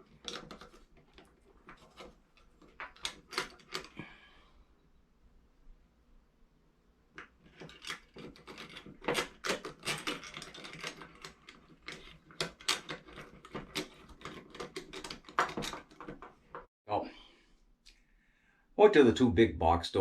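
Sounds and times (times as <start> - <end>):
door lock hardware clicking and rattling: 0.0 - 4.0, 7.4 - 16.6.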